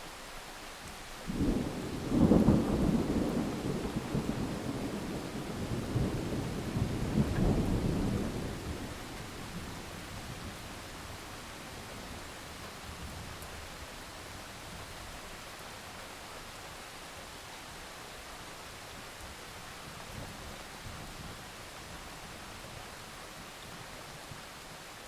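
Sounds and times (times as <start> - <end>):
steady rain: 0.0 - 25.0
rolling thunder: 1.3 - 10.6.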